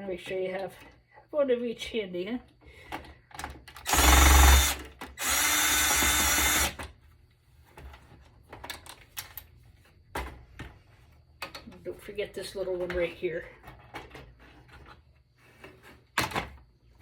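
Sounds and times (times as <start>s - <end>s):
power drill running: 3.8s - 6.8s.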